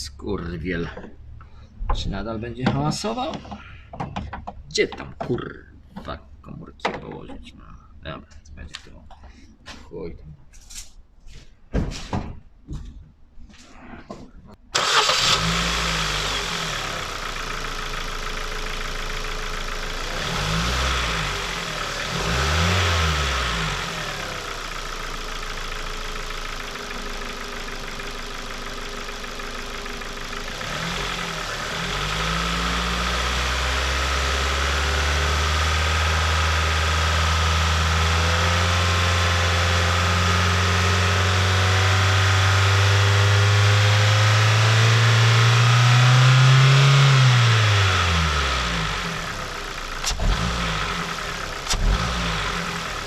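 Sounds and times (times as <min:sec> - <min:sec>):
car engine starting and idling: 0:14.6 - 0:53.0
car engine revving: 0:14.8 - 0:53.0.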